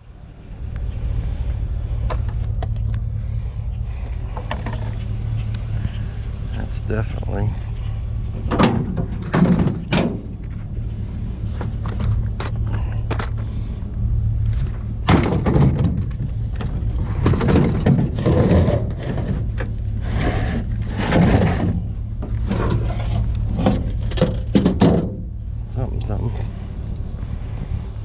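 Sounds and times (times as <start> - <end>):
vehicle engine idling: 0.0 - 28.0
scrap metal clattering: 7.8 - 10.5, 15.0 - 25.2.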